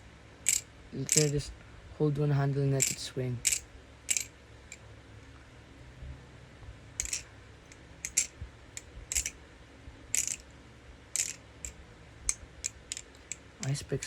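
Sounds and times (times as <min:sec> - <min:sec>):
butterfly knife handle clacking: 0:00.5 - 0:01.4, 0:02.8 - 0:04.3, 0:08.0 - 0:09.3, 0:11.2 - 0:13.4.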